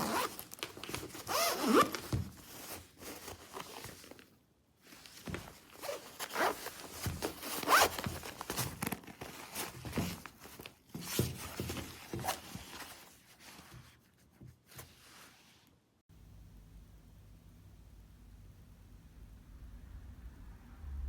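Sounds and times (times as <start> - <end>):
zipper being pulled: 0.0 - 0.4, 1.2 - 2.0, 5.8 - 6.8, 7.4 - 8.3.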